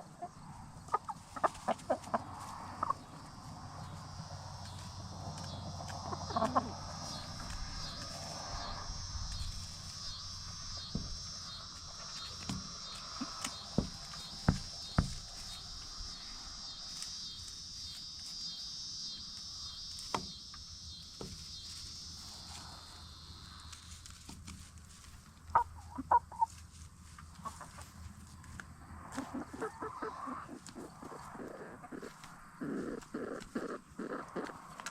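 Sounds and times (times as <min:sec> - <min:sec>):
insects chorus: 0:00.0 - 0:34.9
hens knocking in wooden coop: 0:10.8 - 0:11.4, 0:12.2 - 0:15.4.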